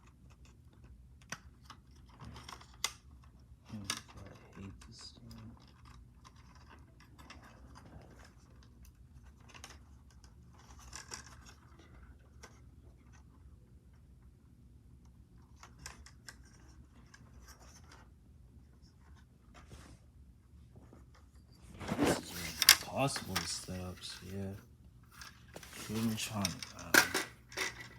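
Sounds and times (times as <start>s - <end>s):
packaging being handled: 21.8s - 27.9s.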